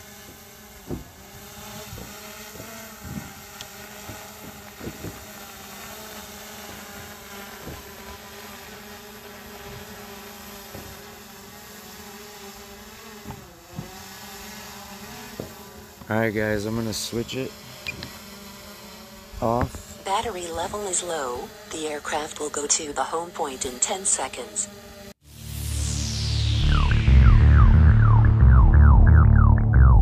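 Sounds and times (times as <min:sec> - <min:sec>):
drone propellers humming: 0:00.0 - 0:30.0
short dull thumps: 0:19.4 - 0:20.2.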